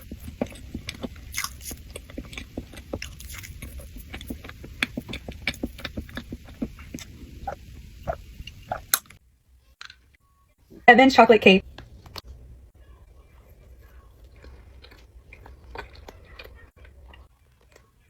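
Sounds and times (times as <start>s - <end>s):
lip smacks: 0.0s - 9.2s
mouth clicks: 0.0s - 9.2s
steady low hum: 0.0s - 9.2s
wet chewing: 0.0s - 9.2s, 13.3s - 17.9s.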